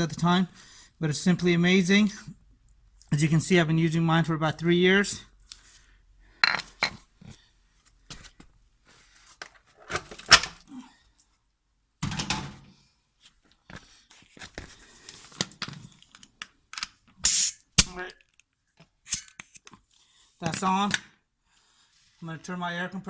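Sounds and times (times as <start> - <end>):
tool handling clicks and knocks: 15.2 - 17.4, 18.2 - 19.8
short burst of air noise: 17.2 - 17.6.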